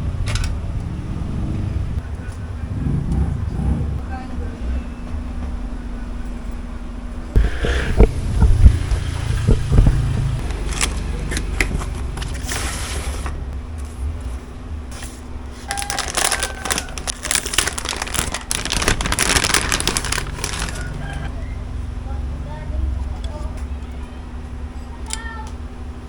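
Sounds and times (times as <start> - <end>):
steady low rumble: 0.0 - 12.6, 13.3 - 23.0
computer parts and packaging handled: 10.4 - 12.7, 15.6 - 21.3.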